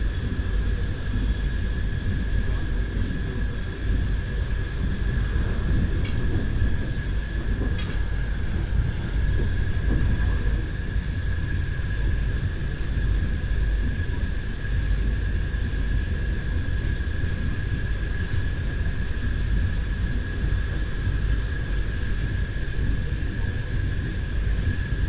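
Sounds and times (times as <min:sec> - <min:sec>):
constant high whine: 0:00.0 - 0:25.0
railway carriage rumbling on track: 0:00.0 - 0:25.0.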